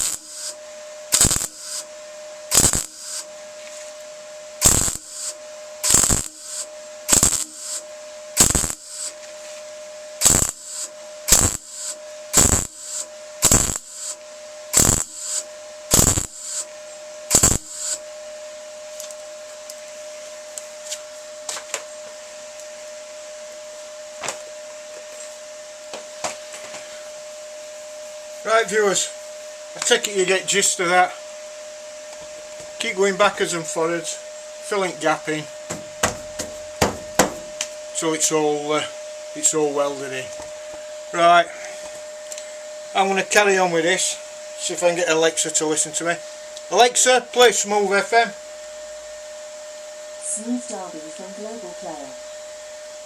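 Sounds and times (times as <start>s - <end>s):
welder short bursts: 0.0s - 1.9s, 2.5s - 3.3s, 4.6s - 9.2s, 10.2s - 16.7s, 17.3s - 18.0s
steady hum: 0.0s - 53.0s.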